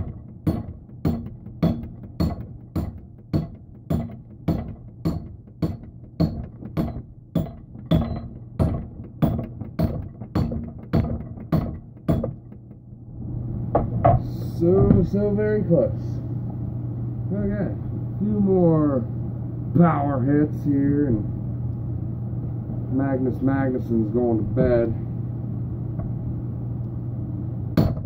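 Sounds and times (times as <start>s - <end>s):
hammer blows with metallic ring: 0.0s - 12.7s.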